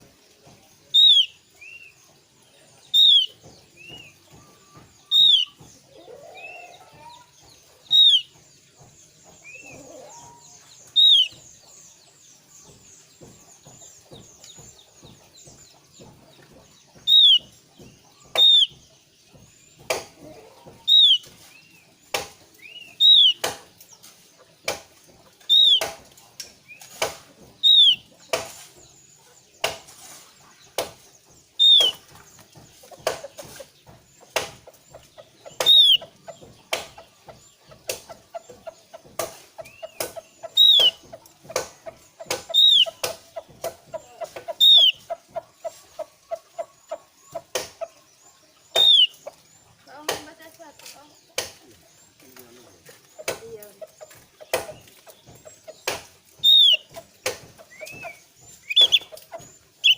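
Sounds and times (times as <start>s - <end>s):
bird calling: 0.9s - 1.9s, 2.9s - 8.4s, 9.4s - 11.6s, 16.0s - 18.8s, 20.0s - 21.8s, 22.5s - 23.7s, 25.4s - 26.0s, 27.6s - 28.3s, 31.5s - 32.2s, 32.8s - 37.1s, 37.8s - 51.0s, 51.6s - 59.9s.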